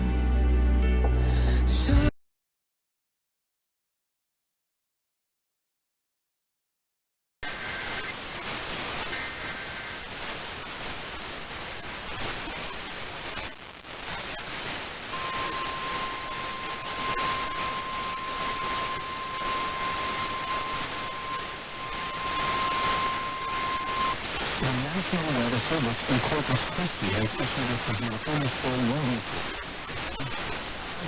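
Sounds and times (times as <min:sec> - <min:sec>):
heavy radio static: 0:07.4 - 0:31.0
warbling data tones: 0:11.8 - 0:30.8
steady alarm tone: 0:15.1 - 0:24.4.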